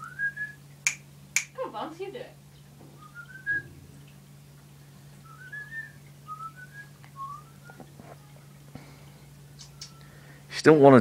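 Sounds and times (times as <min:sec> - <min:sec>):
steady low hum: 0:00.0 - 0:10.6
soft whistling in rising notes: 0:03.0 - 0:04.0, 0:05.2 - 0:07.8.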